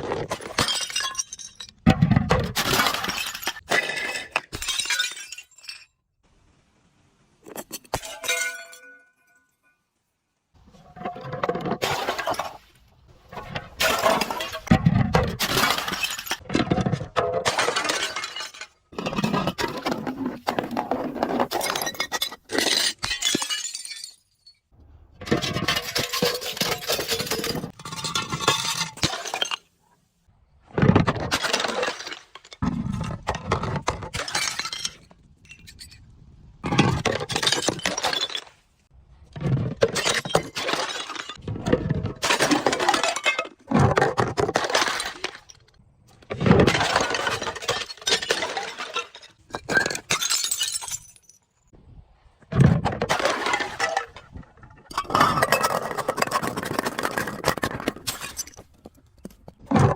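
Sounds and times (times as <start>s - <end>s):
glass bottles breaking and crunching: 0.1s - 6.0s, 7.4s - 9.7s, 11.0s - 12.6s, 13.4s - 29.8s, 30.9s - 36.0s, 36.6s - 38.6s, 39.4s - 51.6s, 53.0s - 58.6s.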